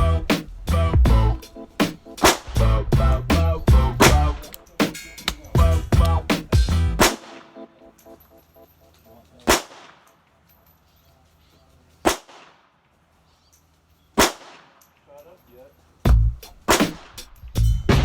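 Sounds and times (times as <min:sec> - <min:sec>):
echoing gunshots: 0:01.5 - 0:02.7, 0:03.3 - 0:07.7, 0:09.4 - 0:10.1, 0:12.0 - 0:12.8, 0:14.2 - 0:14.8, 0:16.6 - 0:17.4.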